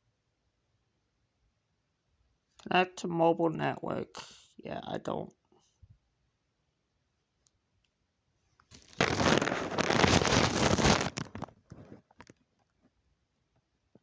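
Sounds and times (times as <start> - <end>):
rustling crunching handling noise: 8.7 - 12.4.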